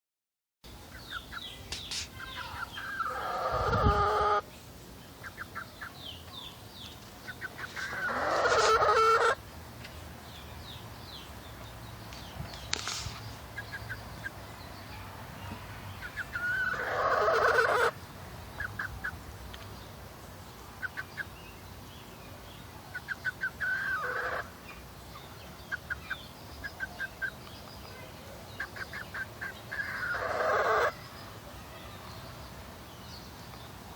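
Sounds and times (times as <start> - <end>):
hen clucking: 1.0 - 4.4, 7.2 - 9.4, 13.5 - 14.4, 15.5 - 19.2, 20.8 - 21.3, 22.9 - 24.5, 25.7 - 27.5, 28.5 - 31.0
hen drawn-out calls: 2.2 - 4.4, 7.4 - 9.4, 16.0 - 18.0, 23.0 - 24.5, 28.6 - 31.0.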